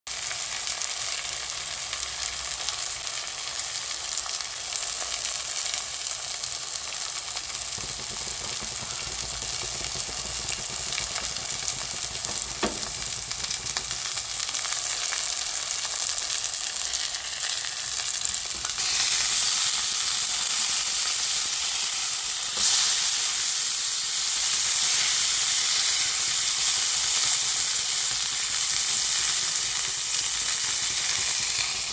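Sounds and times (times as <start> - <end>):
steak sizzling in a pan: 0.1 - 31.9
sharp fat pops: 7.5 - 14.4.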